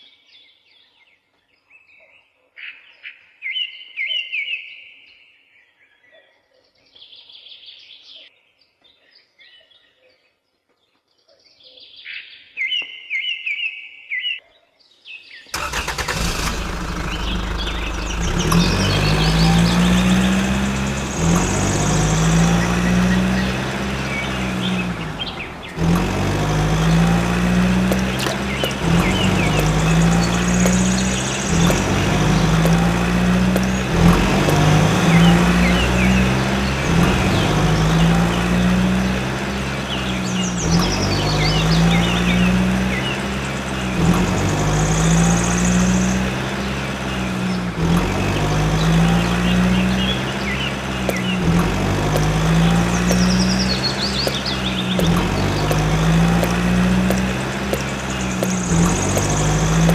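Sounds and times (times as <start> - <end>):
birds chirping: 0.0 - 59.9
motor humming: 15.8 - 42.5, 47.8 - 59.9.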